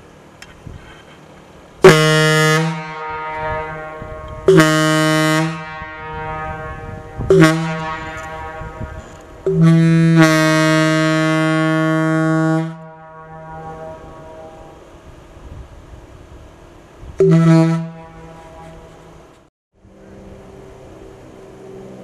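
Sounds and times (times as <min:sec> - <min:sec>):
echo of horn blasts: 0:01.8 - 0:15.1, 0:17.2 - 0:19.2
locomotive air horn blasts: 0:01.8 - 0:15.3, 0:17.1 - 0:19.4.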